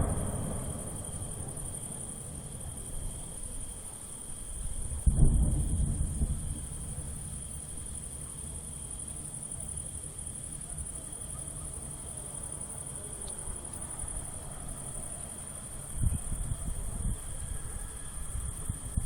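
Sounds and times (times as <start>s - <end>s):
low background rumble: 0.0s - 10.5s
crickets chirping: 0.0s - 19.0s.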